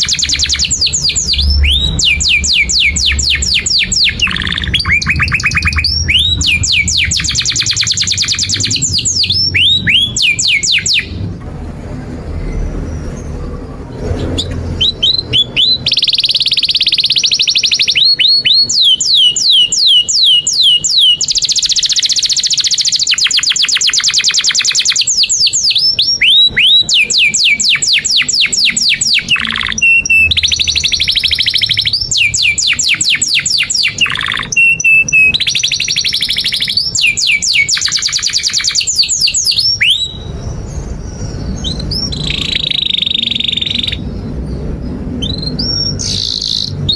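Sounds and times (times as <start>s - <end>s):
canary singing trills: 0.0s - 11.4s, 12.4s - 46.9s.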